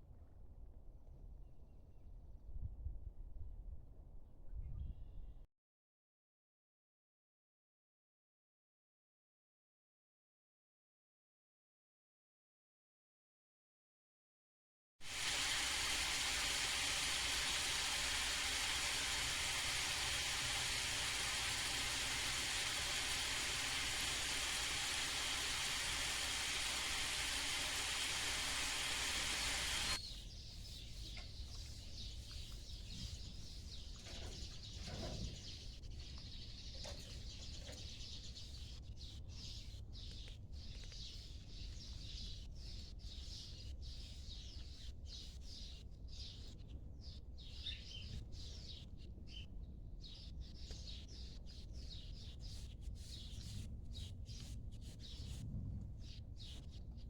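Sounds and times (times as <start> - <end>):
loud steady hiss: 15.0 - 30.0
outdoor ambience: 15.0 - 57.0.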